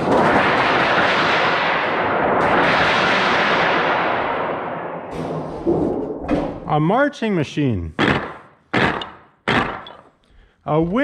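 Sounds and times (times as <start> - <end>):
thunder sheet rumble: 0.0 - 6.4.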